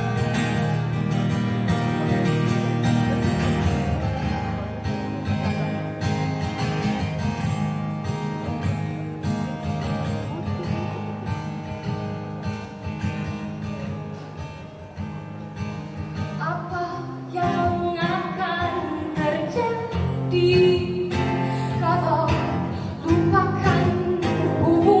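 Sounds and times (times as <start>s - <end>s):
acoustic guitar strummed and plucked: 0.0s - 25.0s
person singing: 16.4s - 25.0s.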